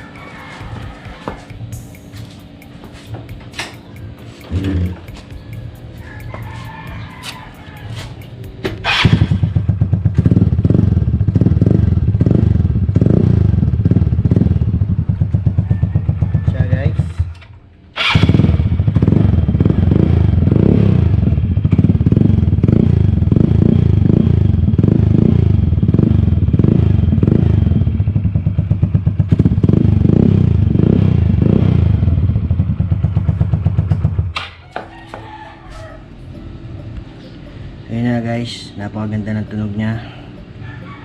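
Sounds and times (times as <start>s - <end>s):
loud scooter engine pulsing: 3.8s - 6.3s, 7.7s - 34.4s.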